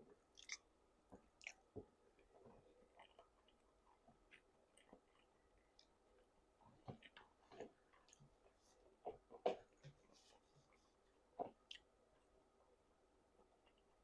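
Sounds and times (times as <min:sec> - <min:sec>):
chewing close to microphone: 0:02.2 - 0:05.9.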